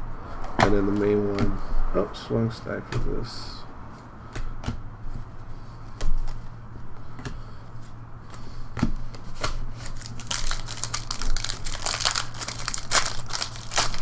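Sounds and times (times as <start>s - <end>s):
wrapper crinkling: 9.8s - 14.0s.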